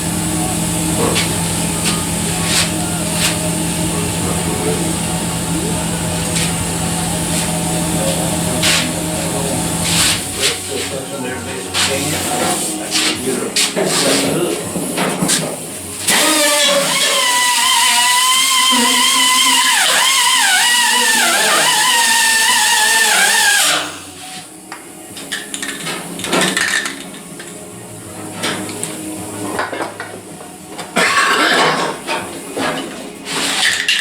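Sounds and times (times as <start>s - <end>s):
grinder whining on metal: 0.0s - 24.4s.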